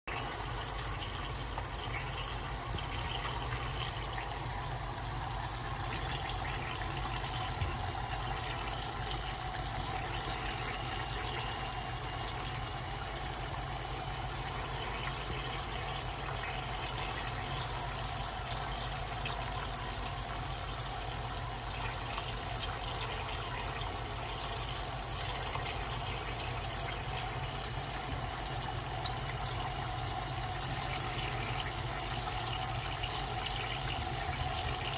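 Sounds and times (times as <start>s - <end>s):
dry ice bubbling hiss: 0.1s - 34.9s.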